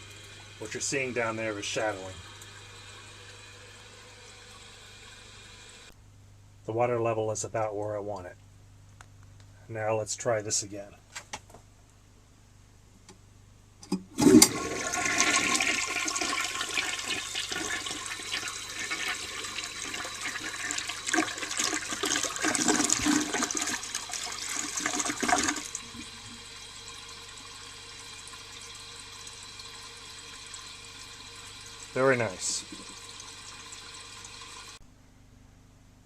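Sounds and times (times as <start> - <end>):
toilet flush water rushing: 0.0 - 5.9, 14.0 - 34.8
toilet tank refilling hiss: 0.0 - 5.9, 14.2 - 34.8.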